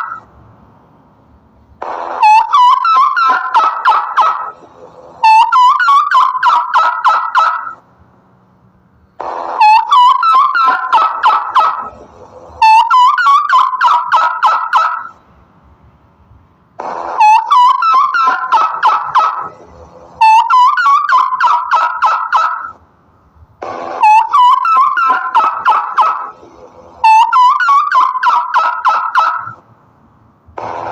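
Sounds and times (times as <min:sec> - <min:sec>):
turkey gobbling: 0:02.2 - 0:04.6, 0:05.2 - 0:07.8, 0:09.6 - 0:11.9, 0:12.6 - 0:15.1, 0:17.2 - 0:19.5, 0:20.2 - 0:22.7, 0:24.0 - 0:26.3, 0:27.0 - 0:29.5.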